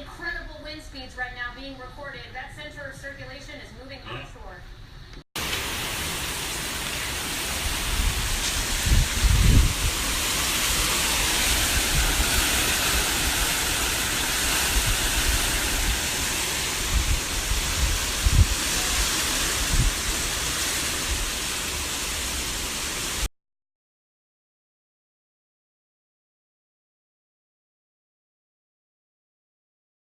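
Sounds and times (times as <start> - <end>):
heavy rain pouring: 5.4 - 23.3
wind buffeting microphone: 7.5 - 21.4.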